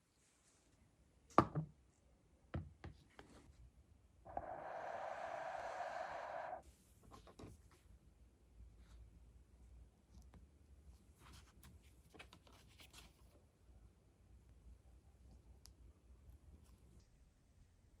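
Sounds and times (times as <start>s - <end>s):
steady noise: 4.3s - 6.6s.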